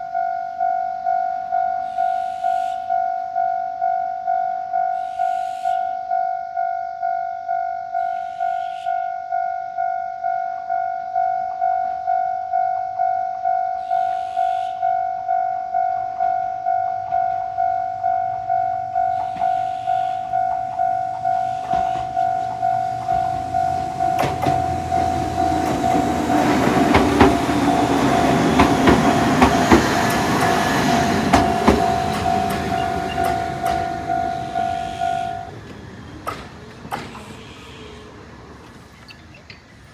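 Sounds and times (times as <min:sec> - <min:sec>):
level-crossing warning bell: 0:00.0 - 0:38.0
train running noise: 0:15.7 - 0:39.9
wheels clicking over rail joints: 0:20.5 - 0:39.9.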